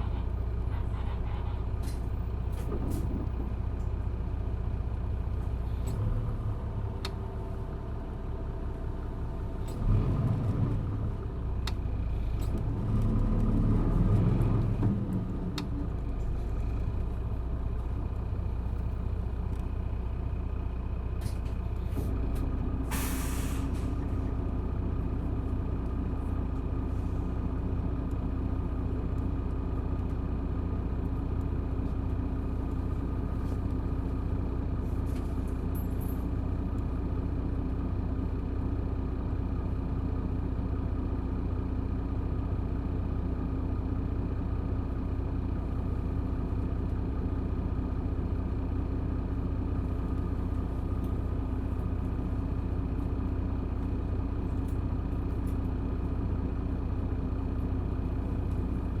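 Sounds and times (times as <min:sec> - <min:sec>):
bus diesel engine: 0:00.0 - 0:59.0
air brake hiss: 0:22.9 - 0:24.0.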